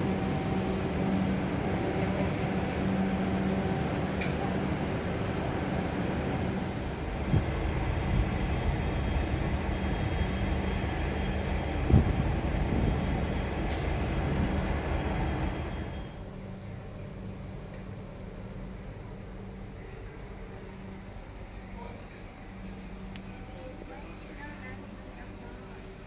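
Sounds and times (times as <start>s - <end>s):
train running: 0.0s - 26.0s.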